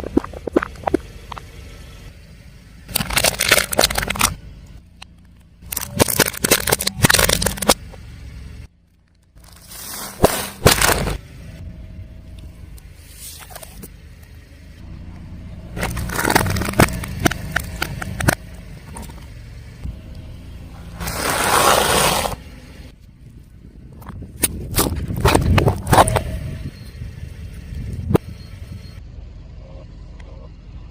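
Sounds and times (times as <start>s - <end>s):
low car engine: 0.0s - 30.9s
objects crushed under car tyre: 2.9s - 4.4s, 5.6s - 7.8s, 9.4s - 11.2s, 15.8s - 18.4s.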